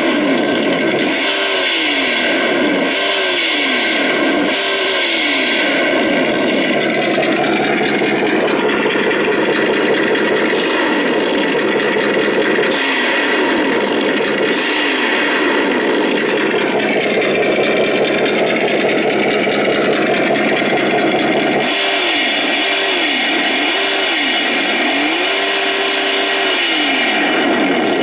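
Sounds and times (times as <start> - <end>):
simulated engine revving from speaker: 1.0 - 6.3, 12.5 - 16.8, 21.6 - 28.0.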